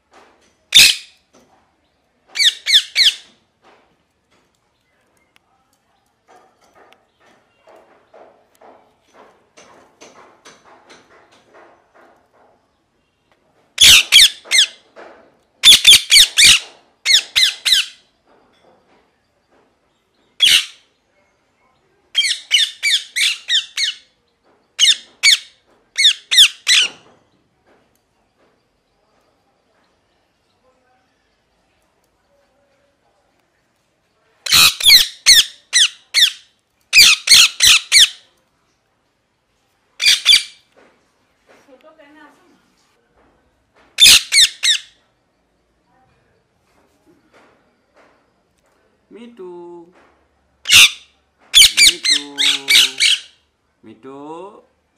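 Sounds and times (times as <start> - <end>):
parakeet screeching: 0.7 - 1.1, 2.4 - 3.3, 13.8 - 14.8, 15.6 - 18.0, 20.4 - 20.8, 22.2 - 24.1, 24.8 - 27.0, 34.5 - 38.2, 40.0 - 40.6, 44.0 - 45.0, 50.6 - 53.4
parrot shrill calls: 0.7 - 1.2, 2.4 - 3.3, 13.8 - 14.8, 15.6 - 18.0, 20.4 - 20.8, 22.1 - 24.1, 24.8 - 27.0, 34.4 - 38.2, 40.0 - 40.6, 44.0 - 45.0, 50.6 - 53.4.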